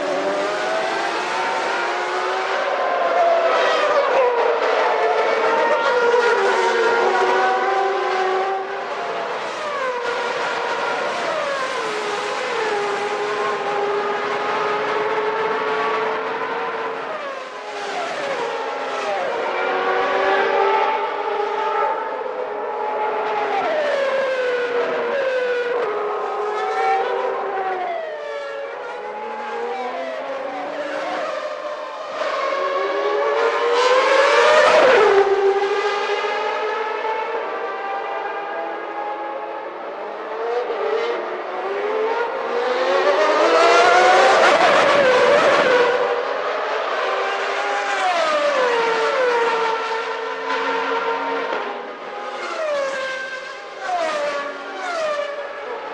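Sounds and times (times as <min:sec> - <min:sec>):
racing car engines passing: 0:00.0 - 0:55.9.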